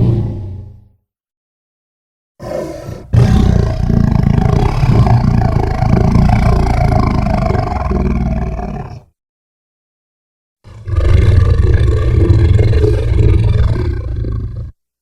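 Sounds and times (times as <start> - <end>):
deep metallic monster roar: 0.0 - 0.8, 2.4 - 9.0, 10.7 - 14.7.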